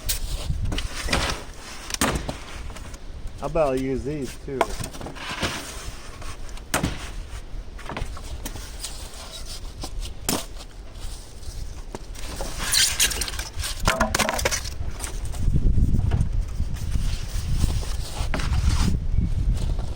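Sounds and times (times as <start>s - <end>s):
squeaky foam scrape: 0.0s - 14.6s, 16.6s - 19.9s
foam board knocks: 6.7s - 8.2s.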